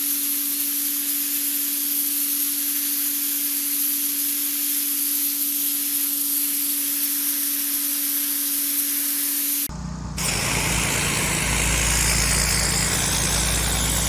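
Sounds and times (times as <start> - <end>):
pressure washer water jet hissing: 1.1 - 14.0
pressure washer hum: 9.7 - 14.0.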